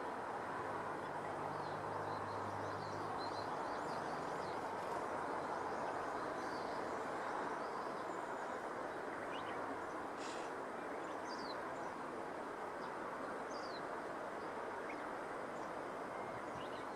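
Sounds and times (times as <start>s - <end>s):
brief hiss: 10.2s - 10.6s.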